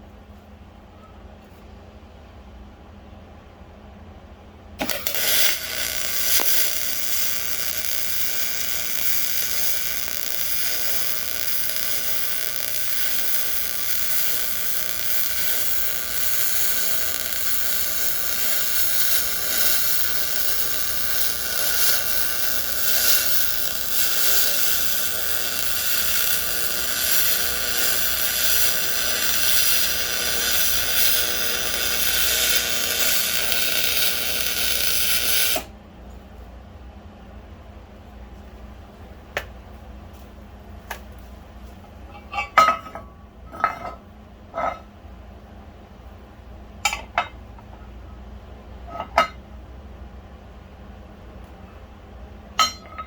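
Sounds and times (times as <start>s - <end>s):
small motor whirring: 4.8s - 35.7s.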